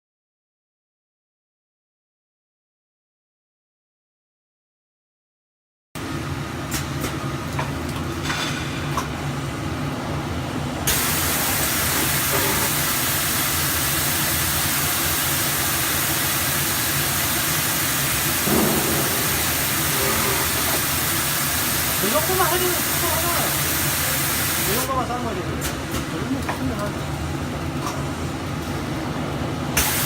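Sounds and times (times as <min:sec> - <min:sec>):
loud gas torch hiss: 0:10.9 - 0:24.9, 0:29.8 - 0:30.0
machine hum: 0:16.6 - 0:25.3.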